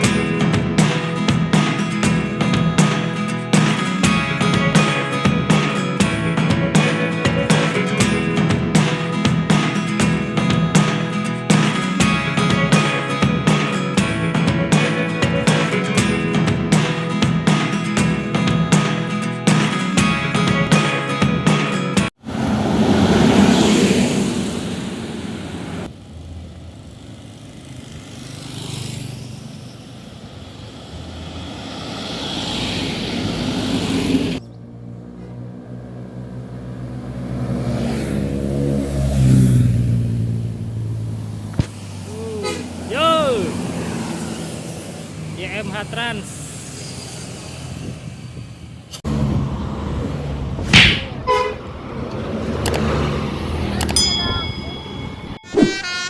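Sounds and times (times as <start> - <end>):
vehicles passing: 0.0 - 56.0
bus engine idling: 24.3 - 27.9, 44.4 - 55.4
multi-tone bus horn: 42.4 - 42.8, 51.2 - 51.7, 55.1 - 56.0.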